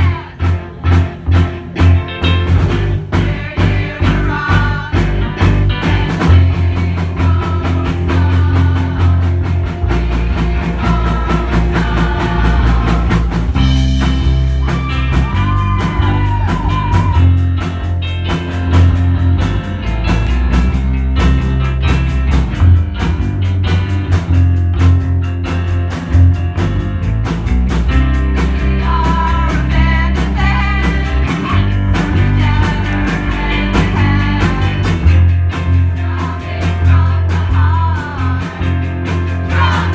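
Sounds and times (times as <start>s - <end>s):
voices singing: 0.0s - 1.1s, 2.6s - 17.4s, 28.4s - 39.9s
live rock band playing: 0.0s - 39.9s.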